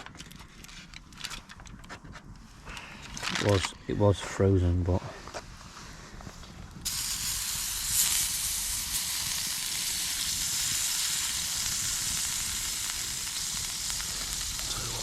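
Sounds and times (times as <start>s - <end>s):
food sizzling on hot surface: 6.8s - 15.0s.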